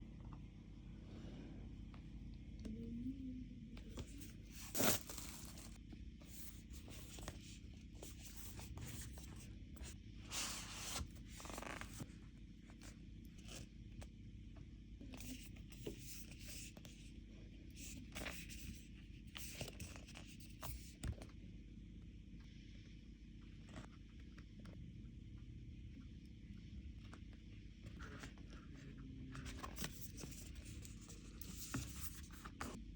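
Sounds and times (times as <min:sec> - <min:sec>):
wrapping tearing and rustling: 0:04.6 - 0:05.8.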